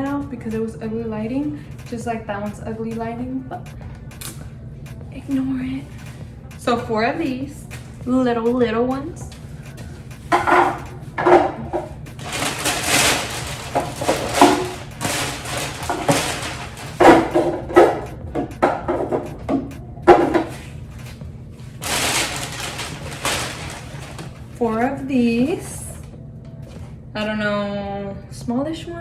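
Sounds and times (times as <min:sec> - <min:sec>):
plastic containers rustling and knocking: 0:10.3 - 0:24.9.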